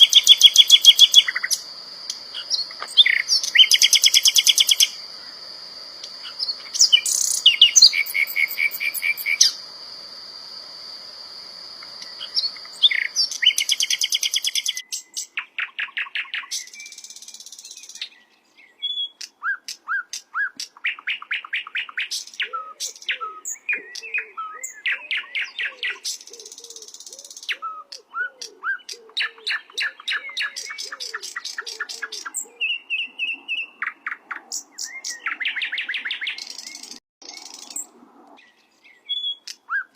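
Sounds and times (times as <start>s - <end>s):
bird singing rapid trills and chirps: 0.0s - 9.7s, 11.8s - 39.9s.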